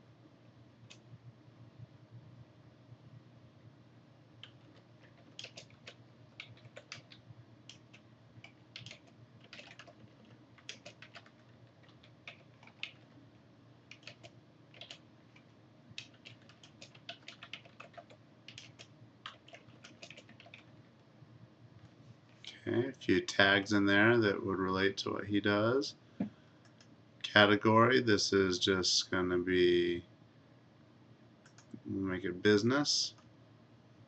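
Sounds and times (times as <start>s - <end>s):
low steady hum: 0.0s - 34.0s
keyboard typing: 4.4s - 13.2s, 13.9s - 20.7s, 31.4s - 31.8s.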